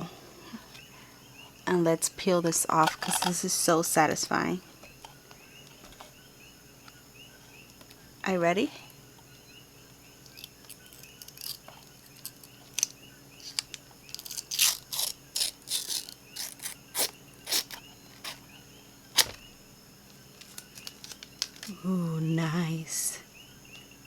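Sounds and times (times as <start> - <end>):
plastic film peeling crackle: 10.2 - 18.4, 20.3 - 21.8.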